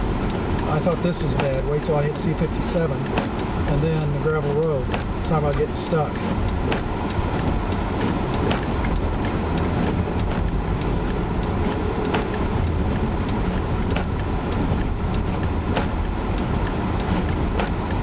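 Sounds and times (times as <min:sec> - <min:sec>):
car road and engine rumble: 0:00.0 - 0:18.0
light sharp clicks: 0:00.2 - 0:18.0.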